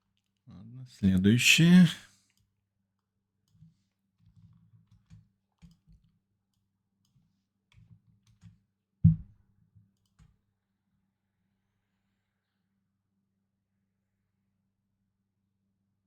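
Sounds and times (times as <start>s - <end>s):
loud knock: 9.1s - 9.3s.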